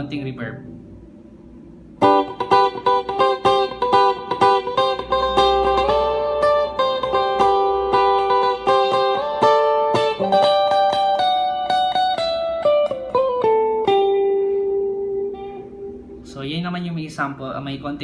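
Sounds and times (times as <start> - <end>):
clean electric guitar melody: 2.0 - 16.3.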